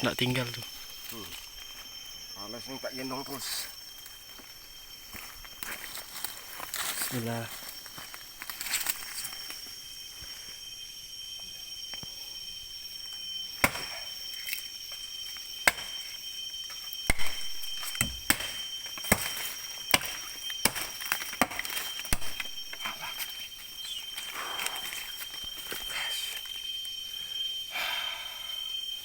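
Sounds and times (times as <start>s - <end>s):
blade chopping tree trunk: 13.6s - 14.0s, 15.6s - 16.0s, 17.0s - 22.9s.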